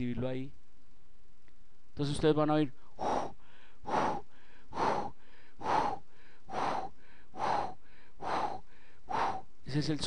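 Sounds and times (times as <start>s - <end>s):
heartbeat with hissing murmur: 2.9s - 9.6s.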